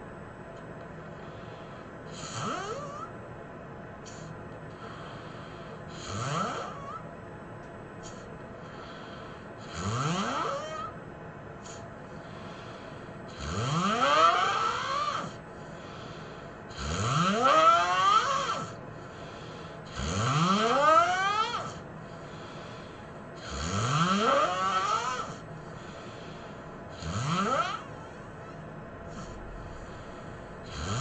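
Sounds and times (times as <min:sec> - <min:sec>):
person snoring loudly: 0:02.1 - 0:03.1, 0:05.9 - 0:07.0, 0:09.6 - 0:11.0, 0:13.3 - 0:16.1, 0:16.7 - 0:18.8, 0:19.8 - 0:21.8, 0:23.4 - 0:25.5, 0:26.9 - 0:28.0, 0:29.1 - 0:31.0.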